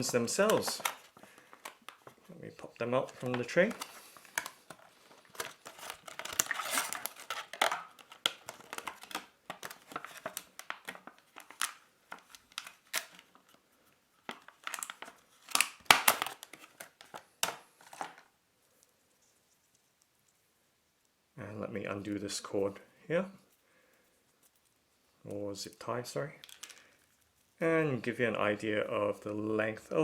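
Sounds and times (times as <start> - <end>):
plastic tray crinkling and snapping: 0.0 - 2.2, 3.0 - 13.6, 14.2 - 18.3, 26.4 - 26.8.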